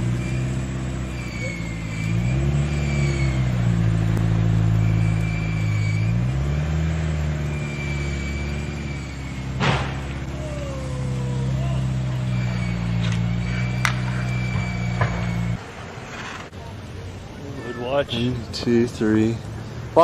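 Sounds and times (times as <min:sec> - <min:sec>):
vehicle engine revving: 0:00.0 - 0:20.0
sharp knock: 0:09.6 - 0:10.2.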